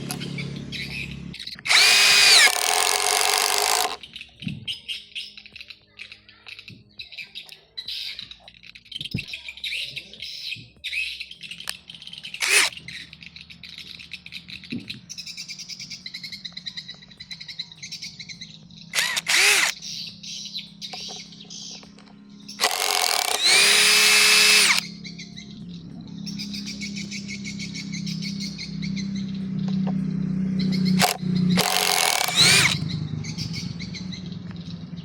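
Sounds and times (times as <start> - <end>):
birds chirping: 0.0 - 35.0
impact driver motor spinning: 1.6 - 4.0, 12.4 - 12.7, 19.0 - 19.8, 22.5 - 24.8, 31.0 - 32.9.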